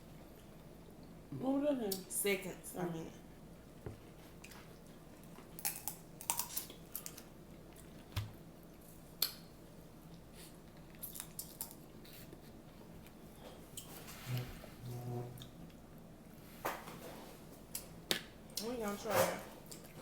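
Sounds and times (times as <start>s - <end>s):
chewing food: 3.7s - 9.4s, 10.0s - 13.9s, 19.6s - 20.0s
shells cracking and peeling: 5.6s - 7.3s.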